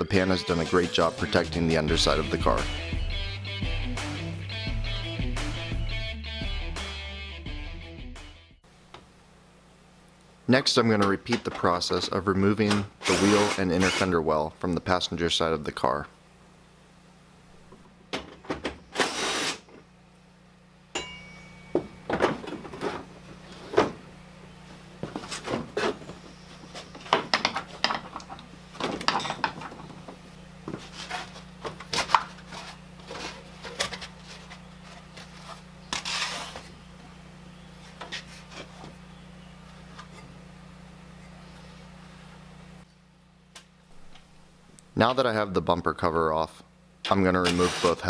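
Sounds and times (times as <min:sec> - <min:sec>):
steady low hum: 0:08.6 - 0:48.0
tools and car parts clattering: 0:21.0 - 0:24.0, 0:27.0 - 0:30.1.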